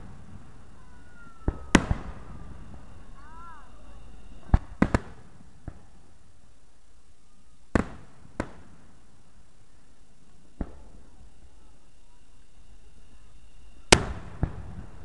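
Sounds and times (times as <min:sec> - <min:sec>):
fireworks bangs with echo: 0:00.0 - 0:06.2, 0:07.7 - 0:09.3, 0:10.2 - 0:11.7, 0:13.8 - 0:15.0.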